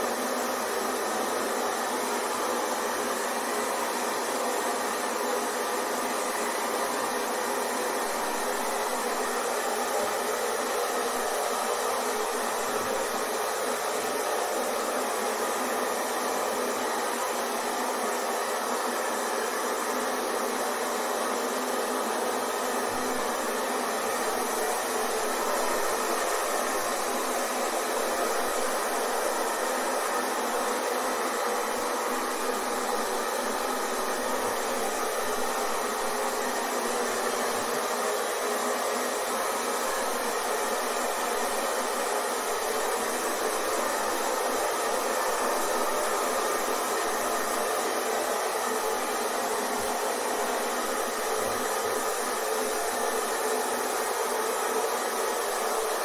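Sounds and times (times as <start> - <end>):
hair dryer running: 0.0 - 56.0.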